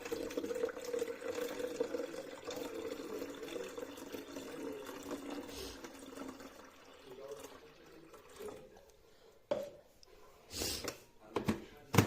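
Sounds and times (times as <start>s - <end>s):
water pouring into container: 0.0s - 8.8s.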